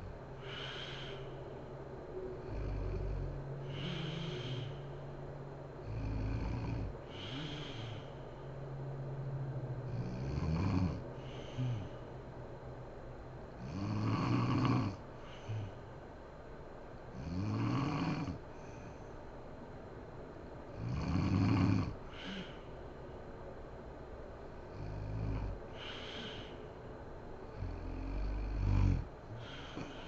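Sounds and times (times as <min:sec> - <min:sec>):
breathy exhales: 0:00.0 - 0:12.3, 0:15.1 - 0:16.1, 0:21.9 - 0:23.2, 0:24.7 - 0:30.0
woman snoring: 0:02.4 - 0:04.9, 0:05.8 - 0:08.2, 0:09.9 - 0:12.0, 0:13.6 - 0:15.8, 0:17.2 - 0:19.0, 0:20.8 - 0:22.7, 0:24.7 - 0:26.6, 0:27.5 - 0:30.0.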